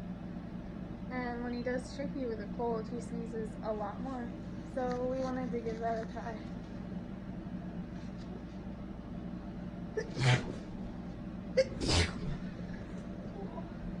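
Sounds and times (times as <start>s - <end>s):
man sneezing: 10.0s - 10.9s, 11.6s - 13.0s.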